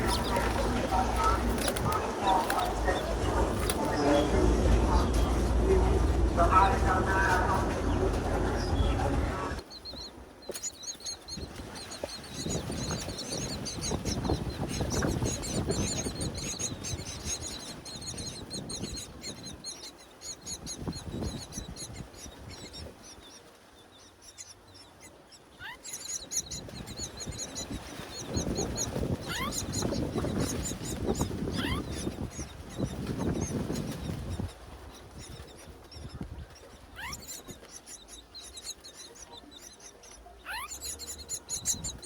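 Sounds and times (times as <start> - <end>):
low rumbling noise: 0.0 - 9.6
chicks begging chirps: 0.0 - 42.0.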